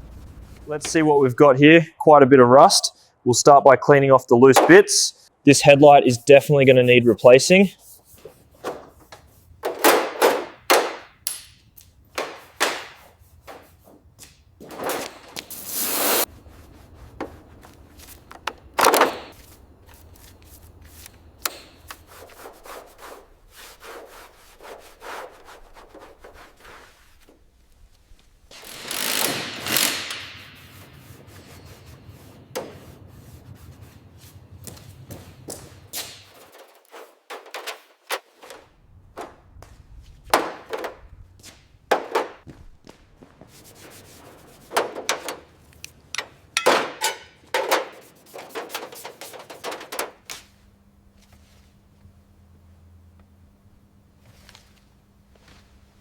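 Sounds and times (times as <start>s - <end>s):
hand scraping rusty metal: 5.6s - 11.2s, 12.0s - 27.3s, 43.6s - 50.2s.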